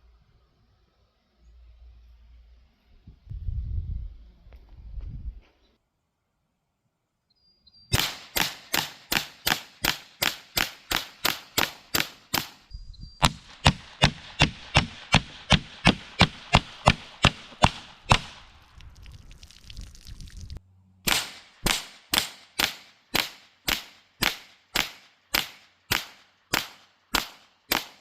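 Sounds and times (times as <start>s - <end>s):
air pistol shots: 7.9s - 18.5s, 21.1s - 28.0s.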